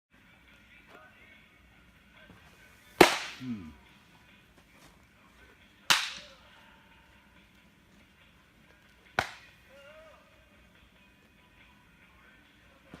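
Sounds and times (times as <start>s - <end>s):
baseball bat cracks: 3.0s - 3.6s, 5.8s - 6.4s, 9.1s - 9.6s.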